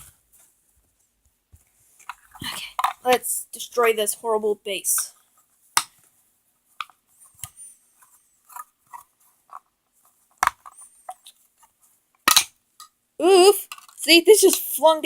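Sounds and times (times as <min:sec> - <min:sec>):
plastic toy pieces clacking: 0:12.2 - 0:12.5.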